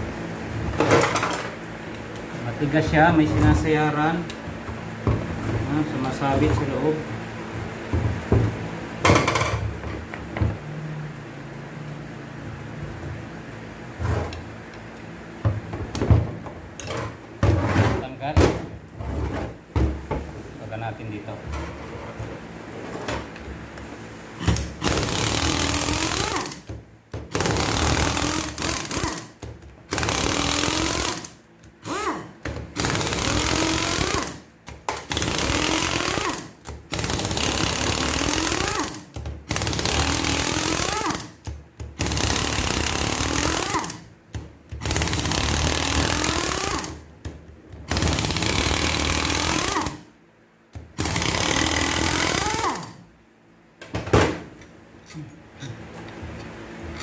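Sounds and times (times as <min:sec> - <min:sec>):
pneumatic air tool bursts: 0:24.5 - 0:26.6, 0:27.3 - 0:29.3, 0:29.9 - 0:34.4, 0:35.1 - 0:41.4, 0:42.0 - 0:44.0, 0:44.8 - 0:47.0, 0:47.9 - 0:50.1, 0:51.0 - 0:53.0.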